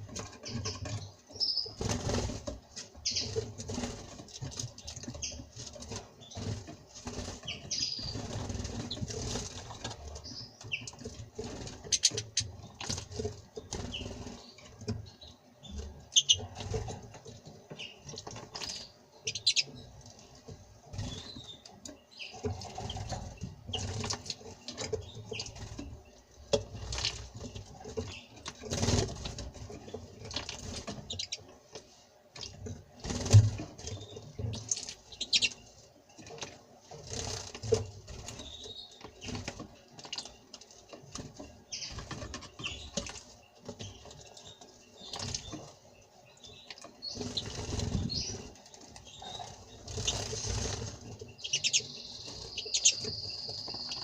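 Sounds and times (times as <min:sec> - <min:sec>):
wings fluttering and splashing water: 0:00.0 - 0:15.2, 0:22.3 - 0:31.5, 0:32.3 - 0:44.2, 0:45.0 - 0:45.8, 0:47.0 - 0:54.0
bird chirps: 0:13.7 - 0:16.5, 0:18.6 - 0:19.9, 0:33.8 - 0:35.6, 0:46.3 - 0:54.0.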